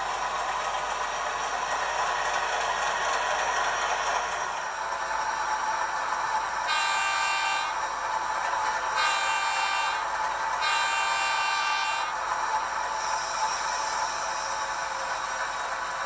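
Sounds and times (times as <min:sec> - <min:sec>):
model diesel engine sound: 0:00.0 - 0:16.0
locomotive horn blasts: 0:06.7 - 0:07.8, 0:09.0 - 0:12.2.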